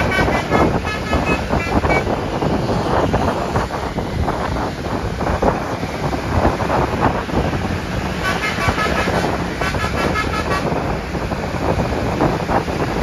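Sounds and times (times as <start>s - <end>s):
multi-tone bus horn tune: 0.0s - 2.2s, 8.1s - 11.0s
road noise: 0.0s - 13.0s
wind buffeting microphone: 0.0s - 13.0s.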